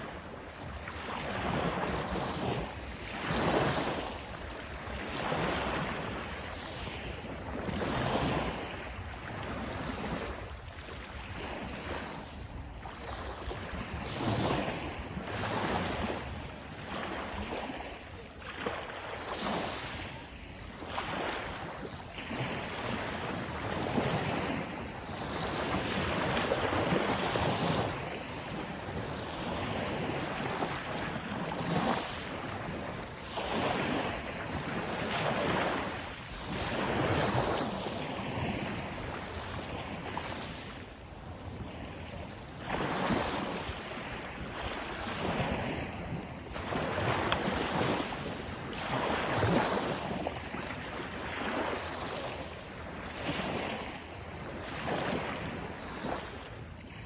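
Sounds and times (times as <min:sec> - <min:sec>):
sea waves washing in: 0:00.0 - 0:57.0.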